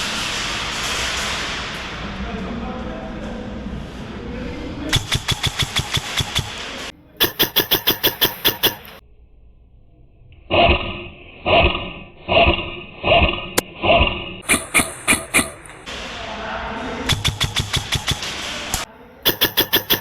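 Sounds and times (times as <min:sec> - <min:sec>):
airsoft gun full-auto bursts: 0:05.0 - 0:06.6, 0:07.2 - 0:09.0, 0:17.1 - 0:18.3, 0:19.3 - 0:20.0.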